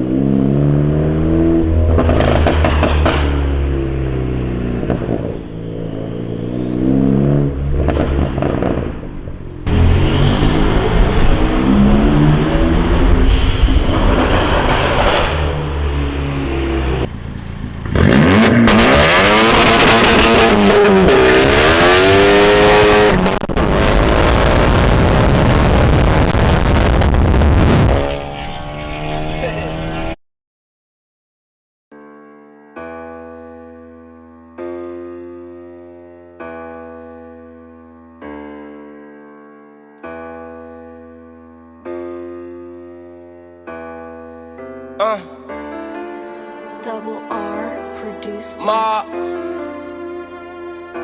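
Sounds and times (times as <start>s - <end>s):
car engine revving with crackles: 0.0s - 30.2s.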